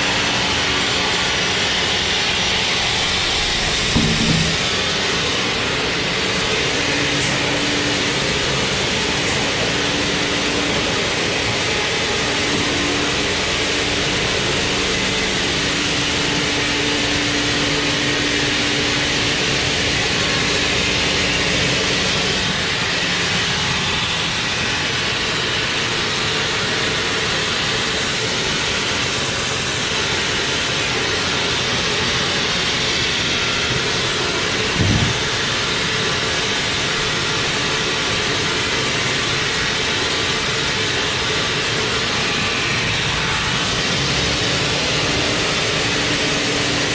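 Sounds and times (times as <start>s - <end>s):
sawmill machinery running: 0.0s - 46.9s
low knock: 2.4s - 4.8s.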